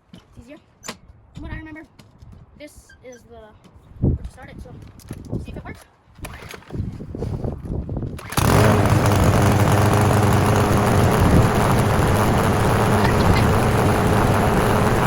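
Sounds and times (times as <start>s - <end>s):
lawn mower engine running: 8.2s - 15.0s.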